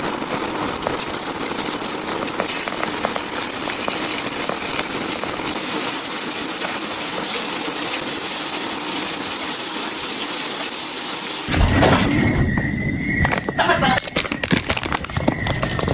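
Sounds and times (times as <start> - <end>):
fish frying in hot oil: 0.0 - 11.5
small crackles and pops: 0.0 - 15.9.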